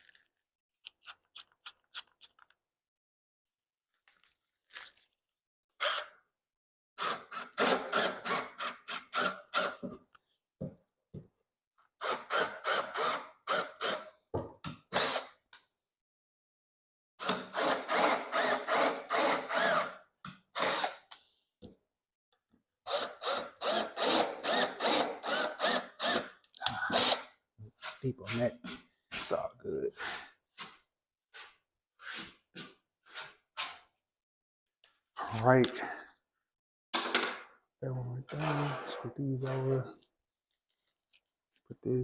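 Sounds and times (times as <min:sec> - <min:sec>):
power drill driving screws: 0:07.0 - 0:09.8, 0:12.0 - 0:14.1, 0:14.9 - 0:15.4, 0:17.2 - 0:20.0, 0:20.6 - 0:21.1, 0:22.9 - 0:27.3.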